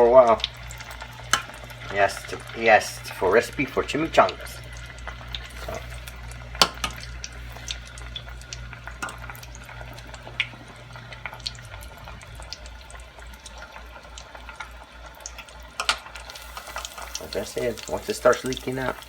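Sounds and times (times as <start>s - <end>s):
oil sizzling with pops: 0.0s - 19.0s
low hum: 5.4s - 14.4s.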